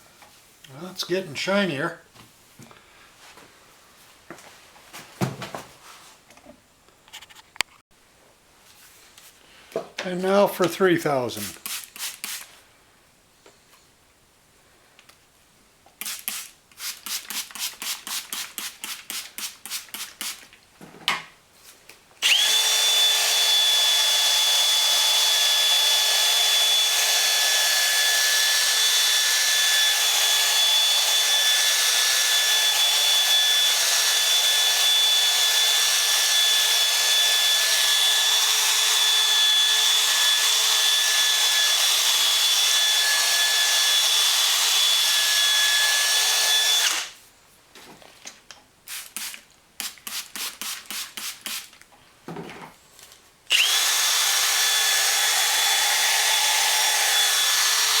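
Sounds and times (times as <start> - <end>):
fast rubbing strokes: 11.4 - 12.5
power drill whining: 22.2 - 47.2, 53.5 - 58.0.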